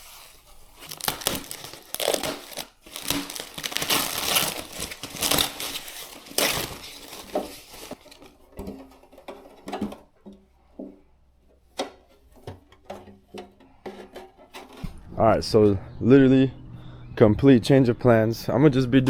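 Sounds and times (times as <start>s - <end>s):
packaging wrap crinkling: 0.0s - 8.4s.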